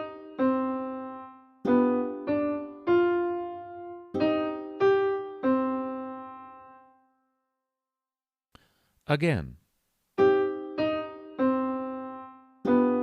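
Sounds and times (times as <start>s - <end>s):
piano melody single notes: 0.0s - 7.2s, 10.2s - 13.0s.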